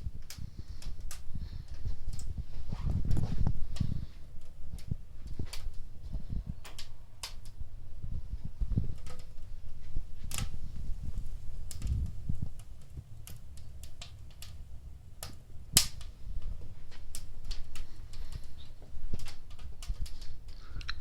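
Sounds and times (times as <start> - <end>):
fire crackling: 0.0 - 21.0.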